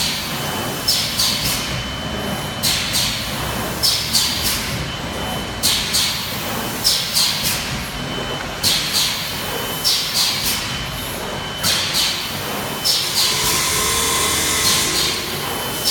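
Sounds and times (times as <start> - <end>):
machine running noise: 11.7 - 15.9
air hisses: 12.7 - 15.9.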